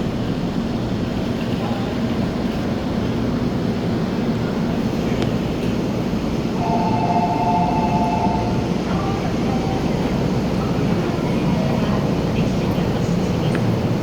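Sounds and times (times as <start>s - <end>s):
train rumble inside carriage: 0.0s - 14.0s
high two-note tone: 6.6s - 8.6s.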